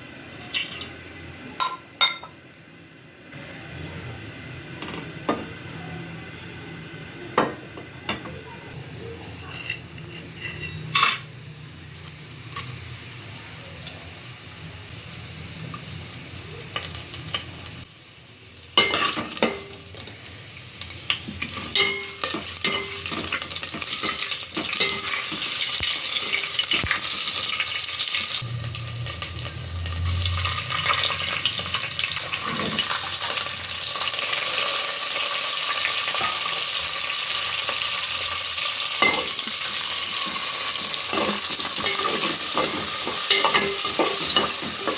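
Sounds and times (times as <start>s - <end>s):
food sizzling in a pan: 0.0s - 8.0s, 8.7s - 44.9s
metal spoon scraping a pan: 9.4s - 11.3s, 40.2s - 44.9s.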